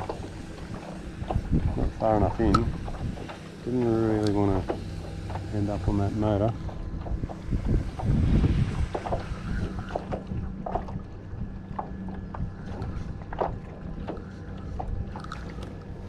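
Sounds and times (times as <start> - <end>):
low steady hum: 0.0 - 16.0
water slapping against kayak hull: 0.0 - 16.0
short clicks and splashes: 11.7 - 16.0.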